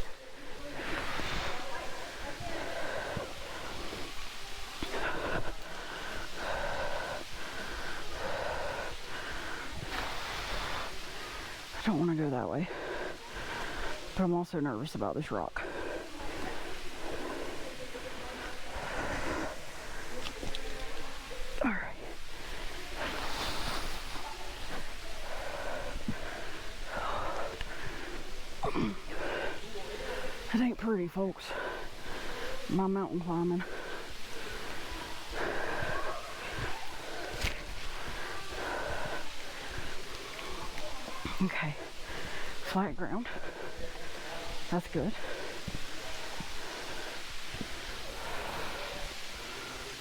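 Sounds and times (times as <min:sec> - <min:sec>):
heavy fast breathing: 0:00.0 - 0:50.0.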